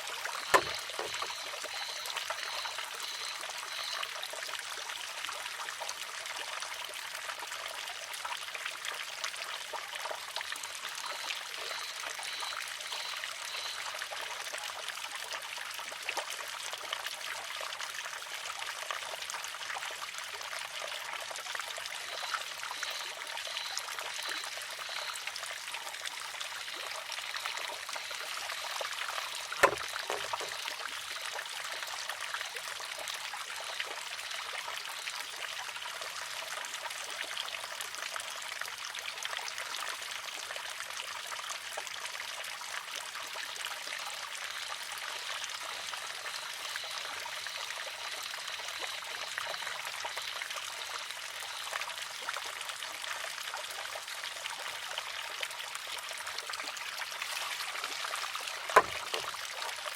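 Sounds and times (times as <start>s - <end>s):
water trickling through bamboo: 0.0s - 59.9s
sharp wooden clack: 0.4s - 1.5s, 29.5s - 30.7s, 58.6s - 59.3s.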